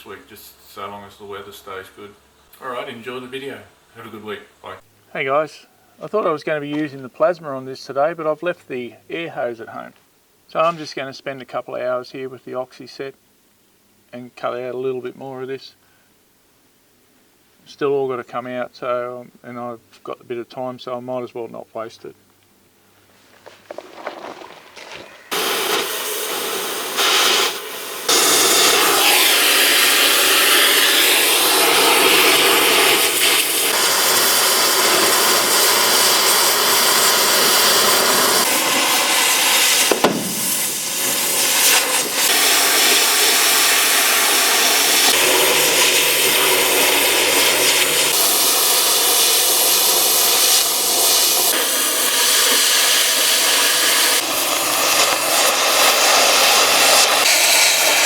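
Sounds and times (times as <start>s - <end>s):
cutting torch hissing: 23.8s - 58.0s.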